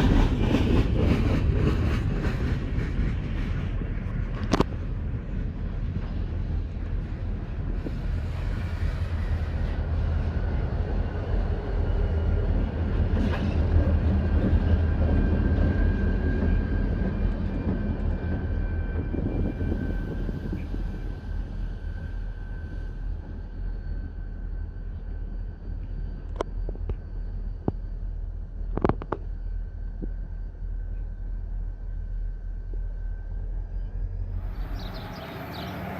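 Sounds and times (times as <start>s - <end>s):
freight train rumbling past: 0.0s - 35.9s
train wheels squealing: 7.7s - 35.9s.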